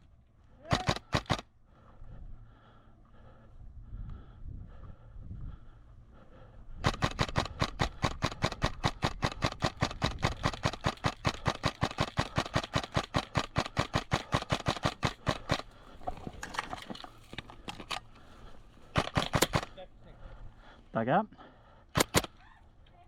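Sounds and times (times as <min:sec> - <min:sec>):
sharp mechanical clicks: 0:00.7 - 0:01.4, 0:06.8 - 0:15.7, 0:18.9 - 0:19.8, 0:21.9 - 0:22.4.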